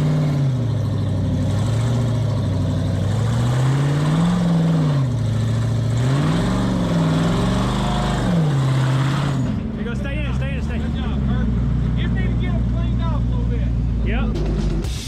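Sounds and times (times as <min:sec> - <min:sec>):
off-road vehicle engine revving: 0:00.0 - 0:15.0.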